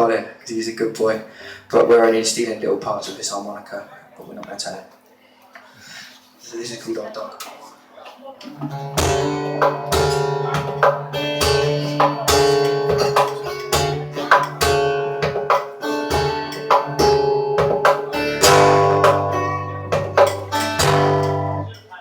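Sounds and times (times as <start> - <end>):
cello holding low notes: 8.6 - 21.7
acoustic guitar picking: 8.6 - 21.8.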